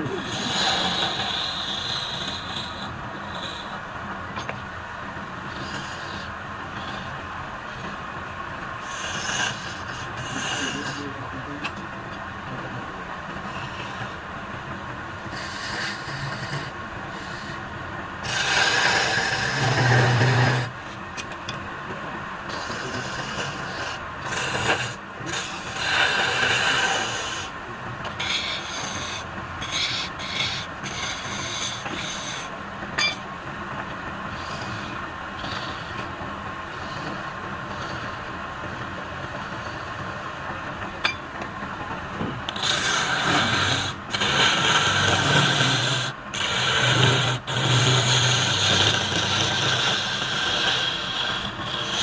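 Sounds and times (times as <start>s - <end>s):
turning tool scraping wood on lathe: 0.0s - 4.6s, 8.9s - 11.8s, 13.4s - 14.2s, 15.2s - 17.6s, 18.2s - 21.4s, 22.5s - 33.2s, 42.5s - 52.0s.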